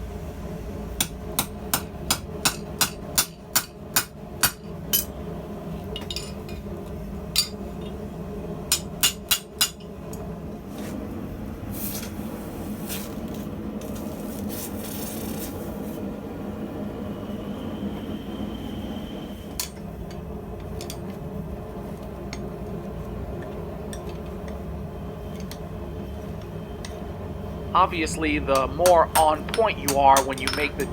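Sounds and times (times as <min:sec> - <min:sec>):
steady low hum: 0:00.0 - 0:30.9
hammer striking steel anvil: 0:28.5 - 0:30.9.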